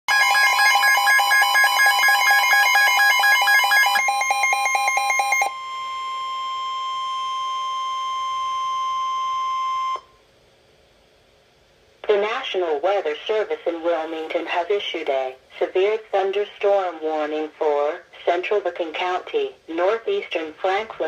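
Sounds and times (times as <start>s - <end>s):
high alarm tone: 0.1s - 10.1s.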